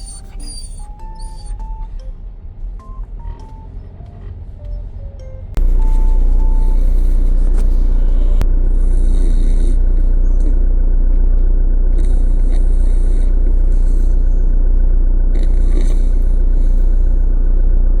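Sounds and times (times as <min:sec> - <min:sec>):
car interior rumble: 0:00.0 - 0:18.0.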